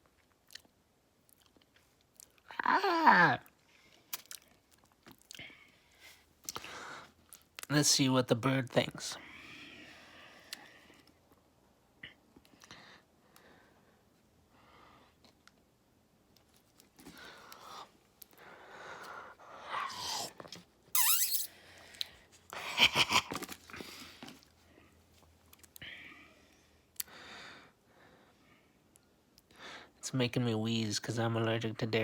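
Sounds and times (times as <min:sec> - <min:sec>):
person eating and chewing: 0:00.2 - 0:00.7, 0:04.1 - 0:05.5, 0:19.6 - 0:21.4
person wheezing: 0:19.6 - 0:20.4.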